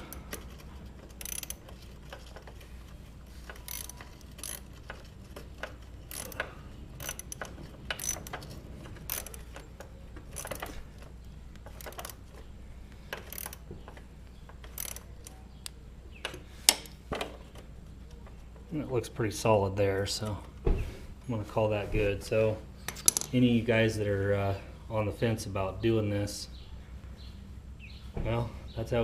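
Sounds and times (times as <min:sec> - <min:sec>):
socket ratchet clicking: 0:00.0 - 0:02.3, 0:03.4 - 0:12.2, 0:13.1 - 0:15.4.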